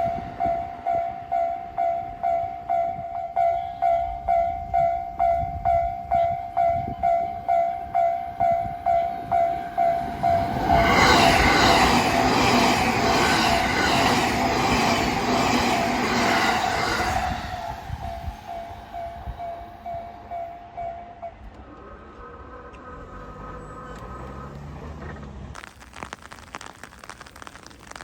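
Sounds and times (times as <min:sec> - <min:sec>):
level-crossing warning bell: 0:00.0 - 0:22.5
train wheel noise: 0:04.6 - 0:23.3.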